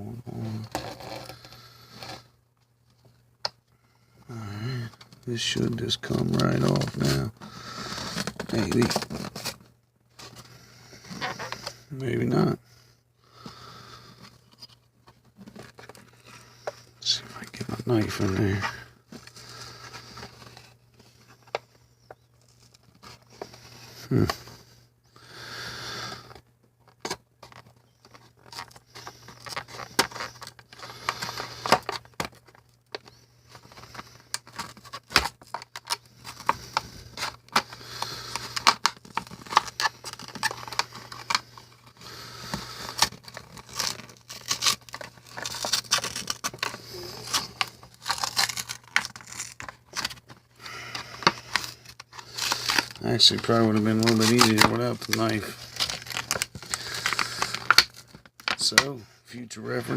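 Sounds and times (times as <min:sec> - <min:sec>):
plastic and cardboard being cut: 0:33.6 - 0:50.1, 0:50.8 - 0:58.0.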